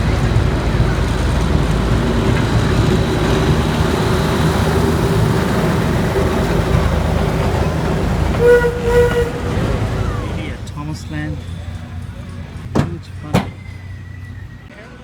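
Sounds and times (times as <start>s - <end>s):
locomotive low rumble: 0.0s - 14.9s
train whistle toot: 6.2s - 10.6s.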